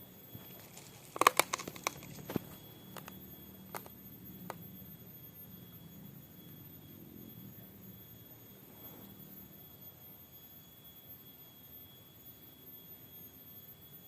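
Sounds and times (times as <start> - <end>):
sharp clicks and knocks: 0.4 - 3.2.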